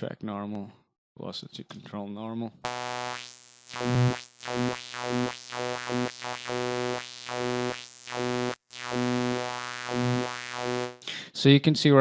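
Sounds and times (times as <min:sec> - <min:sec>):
synthesizer note with wah sweeps: 0:02.7 - 0:11.0.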